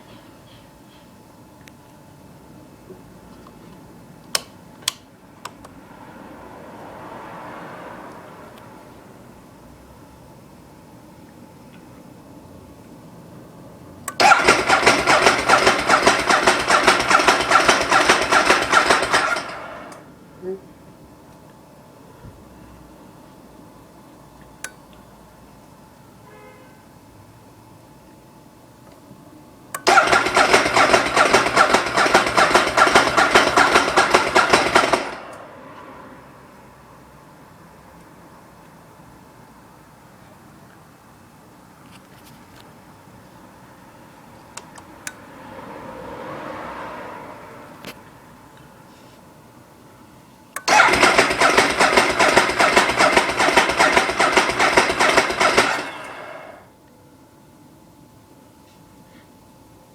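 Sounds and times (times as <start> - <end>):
click: 4.2 - 5.8, 24.4 - 25.0, 44.6 - 45.2, 50.5 - 50.7
starter click: 4.2 - 5.8, 14.1 - 20.0, 29.7 - 35.4
motorcycle engine cranking: 14.1 - 20.1, 29.8 - 35.4, 50.6 - 56.6.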